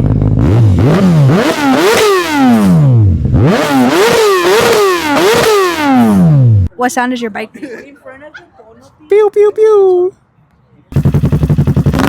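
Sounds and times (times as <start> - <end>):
motorcycle engine revving: 0.0 - 6.7, 10.9 - 12.0.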